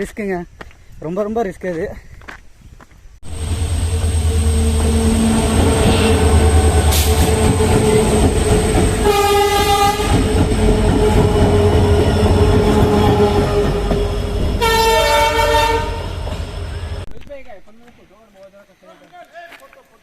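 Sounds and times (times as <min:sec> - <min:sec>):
train rumbling: 0:03.2 - 0:17.1
train horn blast: 0:03.3 - 0:16.9.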